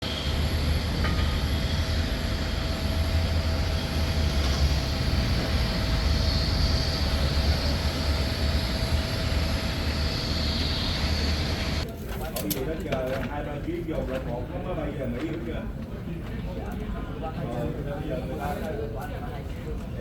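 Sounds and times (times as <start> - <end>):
jet aircraft rumble: 0.0 - 11.8.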